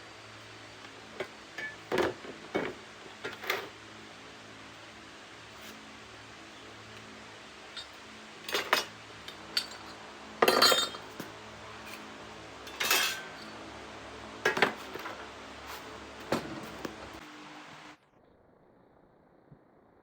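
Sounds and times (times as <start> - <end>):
metal tools clinking: 7.7 - 12.1, 12.7 - 13.5.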